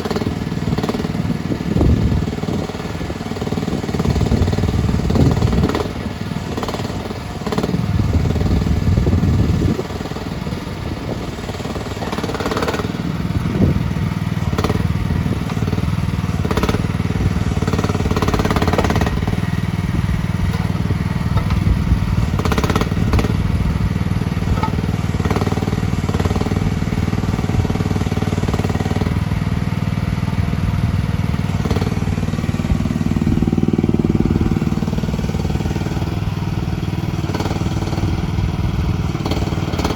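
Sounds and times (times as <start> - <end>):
excavator engine running: 0.0 - 39.9
clanks and knocks: 20.5 - 23.4, 24.4 - 25.4.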